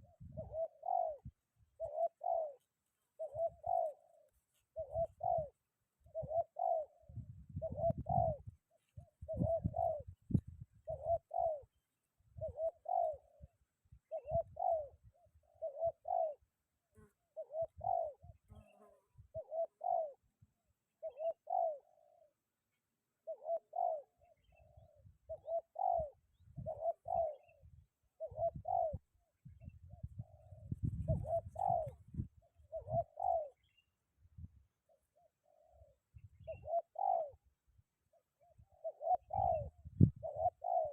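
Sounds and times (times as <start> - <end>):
wind rumble on microphone: 0.0 - 1.8, 7.0 - 12.6, 13.4 - 15.4, 24.6 - 33.4, 34.2 - 34.7, 36.1 - 36.7, 38.6 - 40.7
dove cooing: 0.0 - 10.2, 10.8 - 11.8, 12.4 - 20.2, 21.0 - 22.4, 23.2 - 33.8, 34.4 - 37.5, 38.1 - 40.9.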